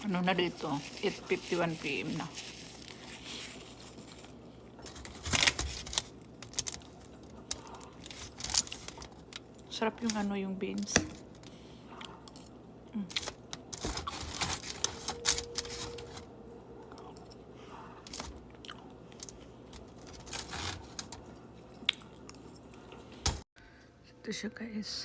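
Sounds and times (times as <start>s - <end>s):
clicks and crinkles: 0.4s - 16.3s, 18.0s - 23.4s
person chewing food: 16.9s - 19.8s, 21.2s - 23.0s.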